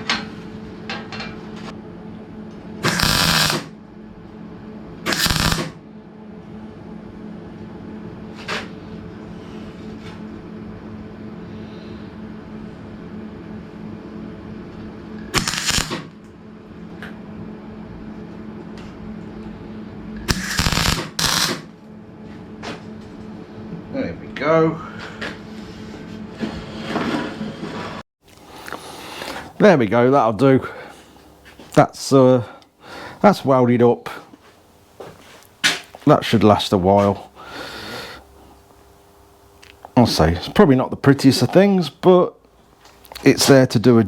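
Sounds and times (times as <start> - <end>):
steady hum: 0.0 - 44.0
arc welding crackle: 2.8 - 3.8, 5.1 - 5.8, 15.3 - 16.2, 20.2 - 21.7.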